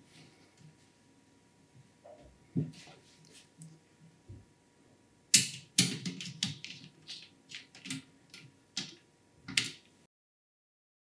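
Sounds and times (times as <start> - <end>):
pc parts clicking and knocking: 5.3 - 9.9.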